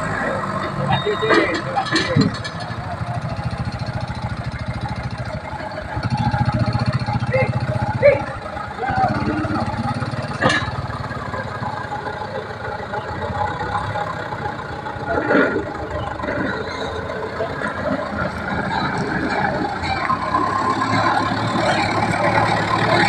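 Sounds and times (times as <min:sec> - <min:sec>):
log hauling machine engine: 0:00.0 - 0:23.0
loud clatter: 0:00.4 - 0:12.2.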